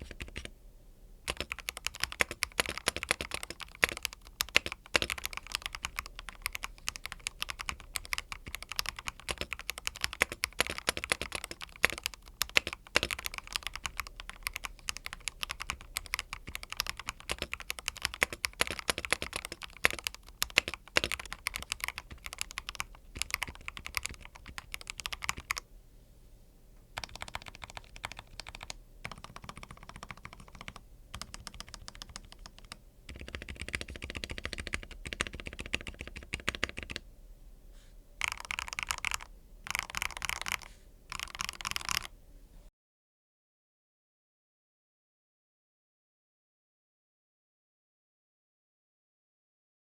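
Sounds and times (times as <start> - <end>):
mechanical keyboard typing: 0.0 - 0.5, 1.3 - 25.6, 27.0 - 37.0, 38.2 - 42.1.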